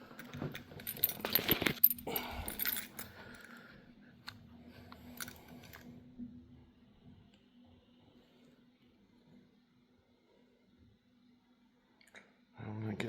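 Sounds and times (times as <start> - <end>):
handling noise: 0.0 - 3.1.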